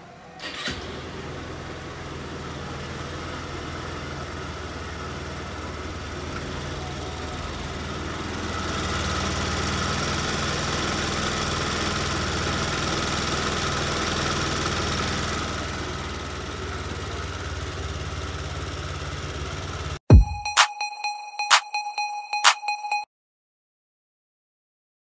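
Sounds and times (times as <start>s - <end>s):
scooter engine idling: 0.3s - 20.0s
engine cut-off click: 0.4s - 1.4s.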